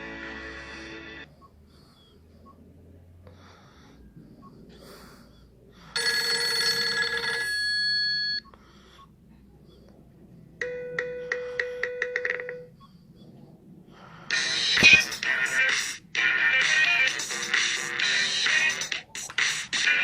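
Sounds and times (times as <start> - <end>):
bell-like ringtone notes: 6.0 - 8.4, 10.6 - 12.7
held electronic chord ringtone: 6.0 - 8.4, 10.6 - 12.7.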